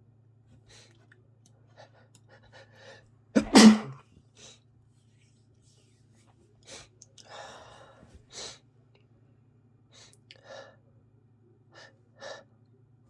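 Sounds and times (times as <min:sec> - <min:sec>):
person sneezing: 0:03.4 - 0:04.0.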